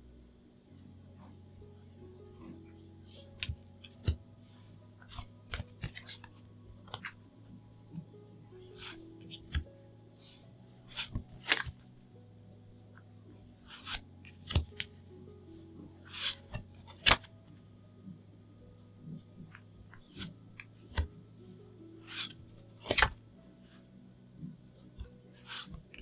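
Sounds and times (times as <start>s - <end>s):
plastic sleeves crinkling and clicking: 2.4s - 12.0s, 13.0s - 15.0s, 22.0s - 23.2s.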